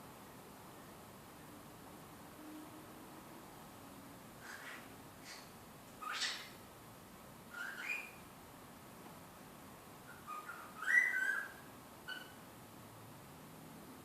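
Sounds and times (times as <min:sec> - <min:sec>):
bird chirp: 0:04.4 - 0:06.6, 0:07.5 - 0:08.3, 0:10.1 - 0:12.4
cockatiel whistling: 0:07.5 - 0:08.2, 0:10.1 - 0:12.4.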